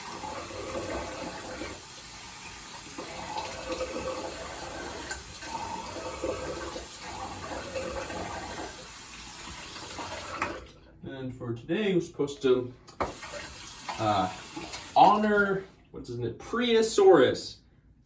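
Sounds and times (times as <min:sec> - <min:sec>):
tap running into sink: 0:12.9 - 0:15.3
water splashing: 0:13.0 - 0:15.4.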